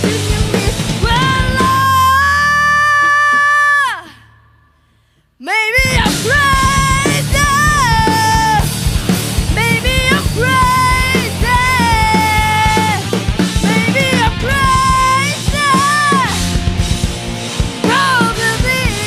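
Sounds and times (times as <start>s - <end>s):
drum kit: 0.0s - 4.0s, 5.8s - 19.0s
bass: 0.0s - 19.0s.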